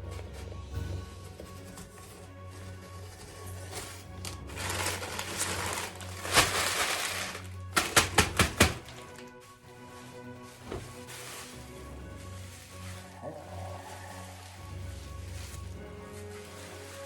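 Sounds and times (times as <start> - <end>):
background music with low bass: 0.0 - 17.0
tearing cardboard and tape: 3.0 - 9.3.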